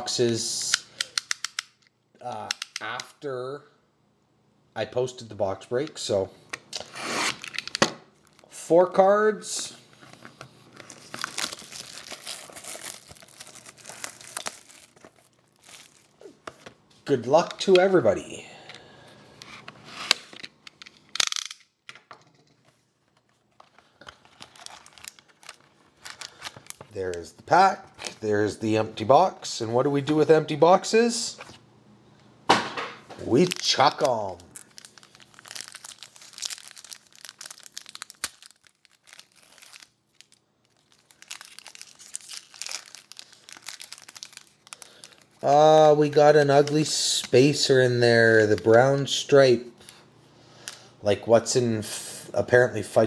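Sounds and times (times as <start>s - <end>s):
plastic wrapper crinkling: 7.4s - 8.5s, 10.7s - 16.6s, 23.6s - 27.2s, 33.2s - 46.9s.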